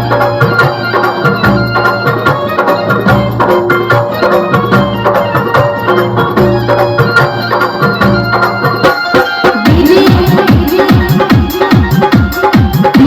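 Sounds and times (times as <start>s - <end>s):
folk-style music with drum beat: 0.0s - 13.0s.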